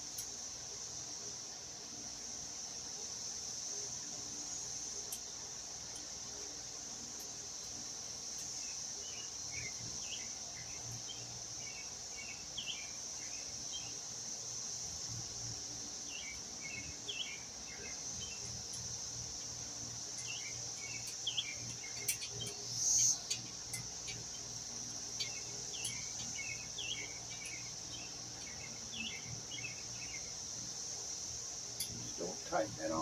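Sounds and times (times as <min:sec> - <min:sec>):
crickets chorus: 0:00.0 - 0:33.0.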